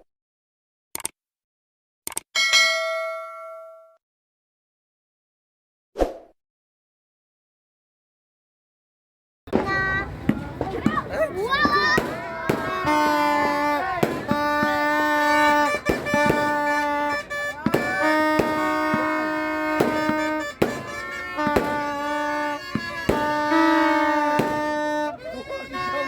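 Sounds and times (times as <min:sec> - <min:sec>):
fireworks bangs: 0:09.5 - 0:26.0
reedy bagpipe-like tones: 0:11.8 - 0:26.0.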